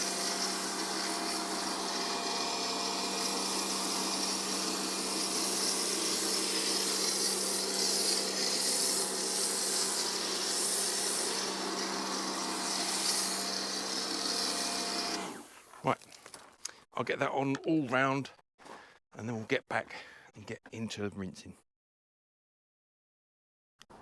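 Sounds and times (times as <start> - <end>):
hissing foam spray: 0.0 - 2.1, 3.2 - 15.4
pressure washer motor hum: 0.0 - 15.5.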